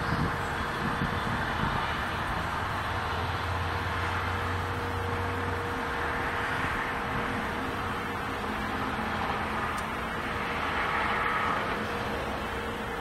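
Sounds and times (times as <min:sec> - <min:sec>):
wind rushing on microphone: 0:00.0 - 0:05.6
constant ringing tone: 0:00.0 - 0:13.0.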